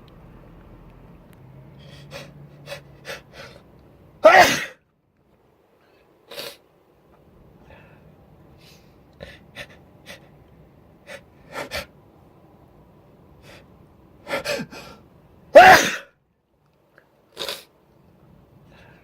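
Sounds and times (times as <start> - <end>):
sharp in-drawn gasps: 1.7 - 3.7
person sneezing: 4.2 - 4.8, 15.6 - 16.1
person sniffing: 6.3 - 6.6, 17.4 - 17.7.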